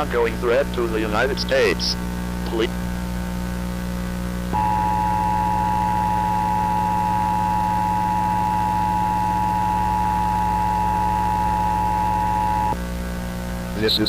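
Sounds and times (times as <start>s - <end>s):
low steady hum: 0.0s - 13.8s
two-tone alert tone: 4.6s - 12.8s.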